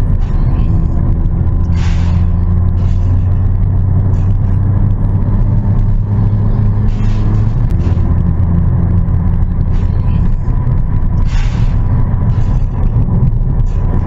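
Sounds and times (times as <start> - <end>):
car engine running: 0.0 - 14.0.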